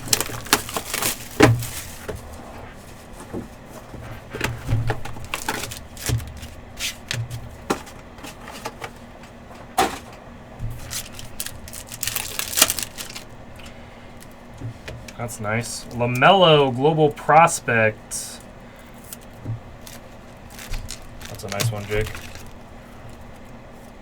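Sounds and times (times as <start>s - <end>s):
wrapper crinkling: 0.0s - 2.1s, 4.9s - 7.2s, 10.7s - 14.4s, 18.9s - 24.0s
cardboard clicks and knocks: 19.2s - 23.2s.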